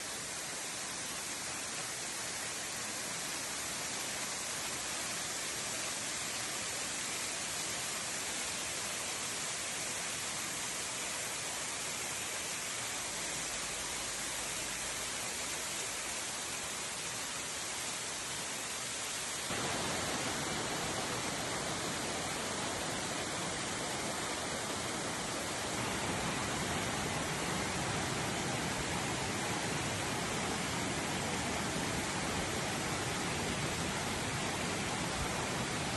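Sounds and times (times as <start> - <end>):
waterfall rushing: 19.4 - 35.9.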